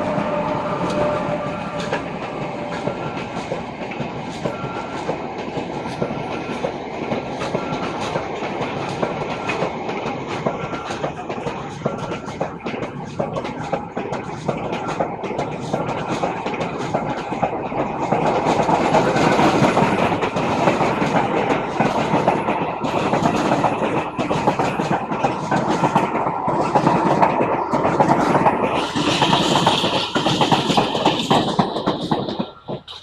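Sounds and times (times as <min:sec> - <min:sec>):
train rumbling on track: 0:00.0 - 0:33.0.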